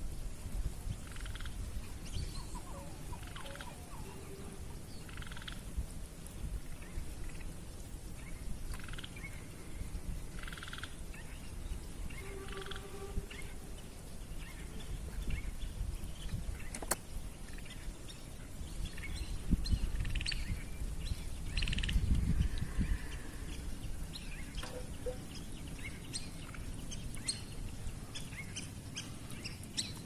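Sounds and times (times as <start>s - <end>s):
frogs trilling: 1.0s - 5.7s, 8.2s - 11.3s, 24.3s - 27.4s.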